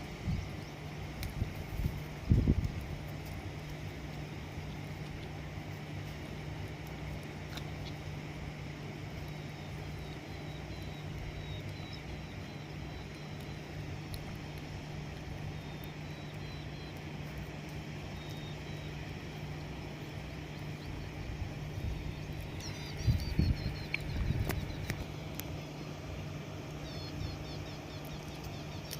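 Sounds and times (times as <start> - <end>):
low mechanical hum: 0.0 - 28.9
outdoor background noise: 0.0 - 28.9
faint high chirps: 9.2 - 13.8, 15.5 - 17.0, 18.1 - 20.0, 20.6 - 26.0, 26.7 - 28.9.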